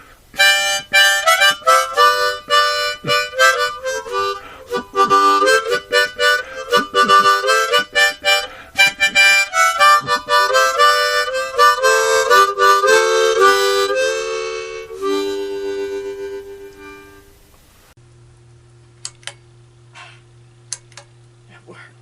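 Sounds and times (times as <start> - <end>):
fast reedy melody: 0.4 - 17.3.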